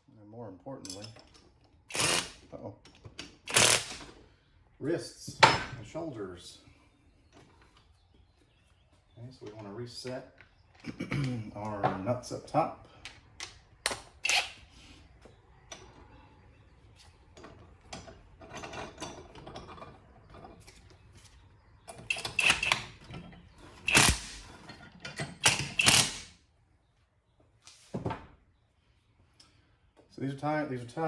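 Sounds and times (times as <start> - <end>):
metal tools clinking and scraping: 0.8 - 2.2, 17.0 - 21.2, 21.9 - 26.3
sharp metal clanks: 23.9 - 26.3.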